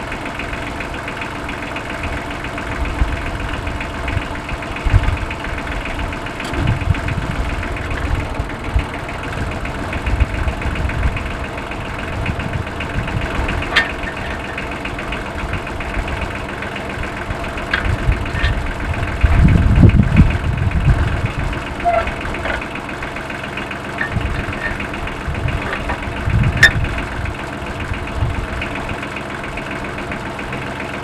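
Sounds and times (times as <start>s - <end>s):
tractor engine running: 0.0s - 31.0s
sharp metallic clicks: 13.3s - 15.7s.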